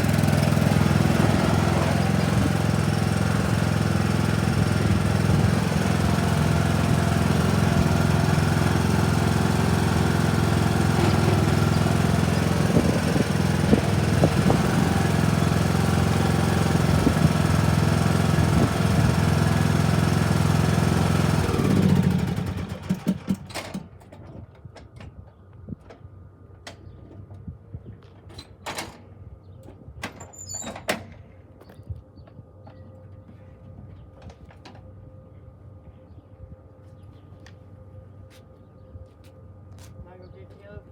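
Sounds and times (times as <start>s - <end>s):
lawn mower engine running: 0.0s - 24.3s.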